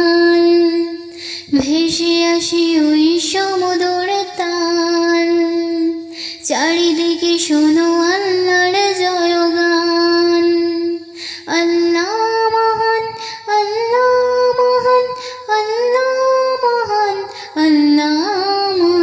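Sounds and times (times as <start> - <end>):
woman singing devotional song: 0.0 - 19.0.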